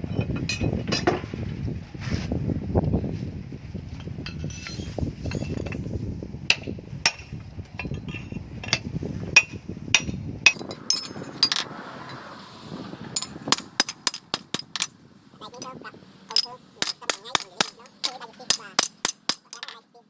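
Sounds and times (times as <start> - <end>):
hammer striking hot steel on anvil: 13.2 - 14.9, 16.3 - 19.7.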